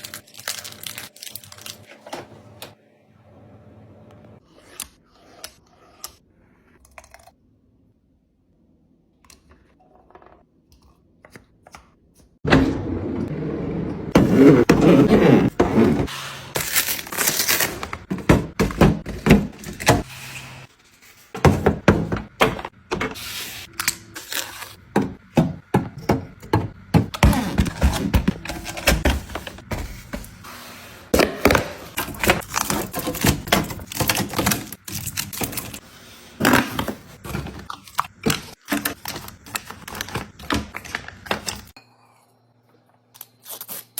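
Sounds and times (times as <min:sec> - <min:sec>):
household items handled and set down: 0:14.2 - 0:20.1, 0:21.3 - 0:23.3, 0:24.8 - 0:35.8.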